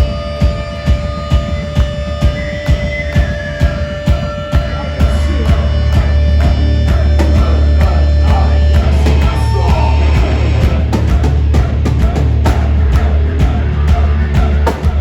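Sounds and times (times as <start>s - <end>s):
heavy metal band playing: 0.0s - 15.0s
drum hits: 4.1s - 15.0s.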